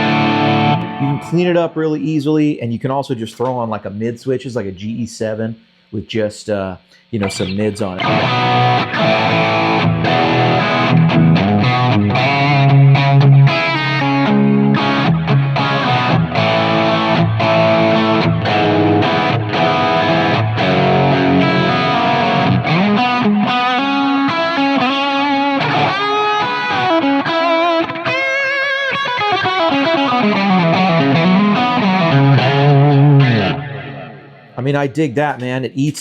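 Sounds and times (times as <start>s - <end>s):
overdriven electric guitar: 0.0s - 1.3s, 7.2s - 34.6s.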